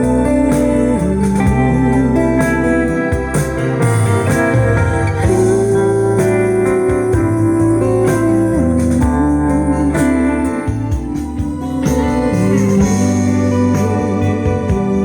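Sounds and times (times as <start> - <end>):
pop ballad over speakers: 0.0 - 15.0.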